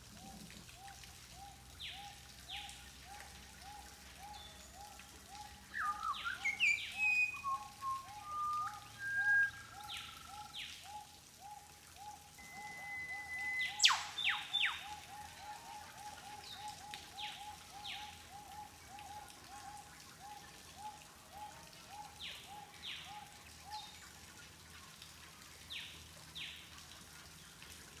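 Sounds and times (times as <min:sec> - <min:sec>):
bird whistles sweeping downward: 0:05.8 - 0:10.2, 0:12.4 - 0:15.0.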